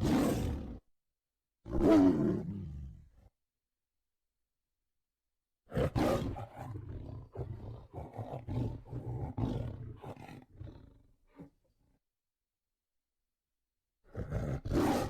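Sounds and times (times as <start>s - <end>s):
tiger growling: 5.7s - 11.6s, 14.1s - 15.0s.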